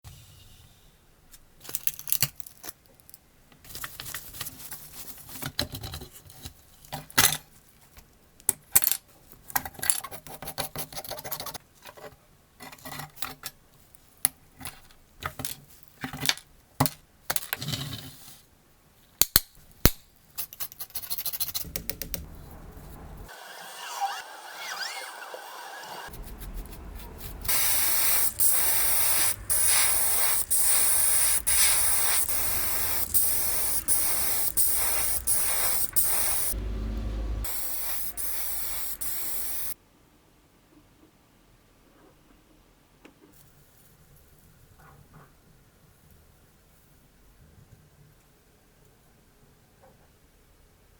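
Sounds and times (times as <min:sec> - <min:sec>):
clicks and clinks of small parts: 0:01.6 - 0:03.2
steady spray hiss: 0:24.8 - 0:39.8.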